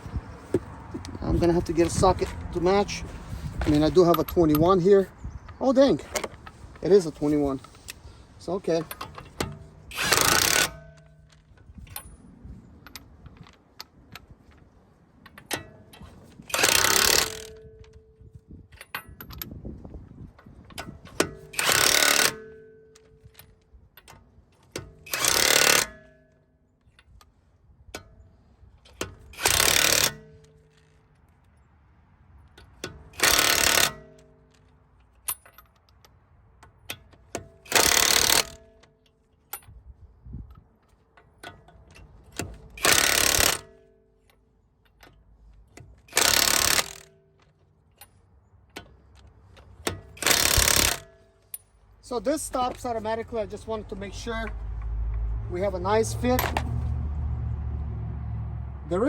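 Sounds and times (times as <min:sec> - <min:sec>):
impact wrench bursts: 0:08.7 - 0:11.2, 0:16.4 - 0:17.7, 0:21.1 - 0:22.7, 0:24.7 - 0:26.2, 0:28.9 - 0:31.0, 0:32.7 - 0:34.3, 0:37.4 - 0:38.8, 0:42.3 - 0:43.9, 0:46.0 - 0:47.2, 0:49.8 - 0:51.6.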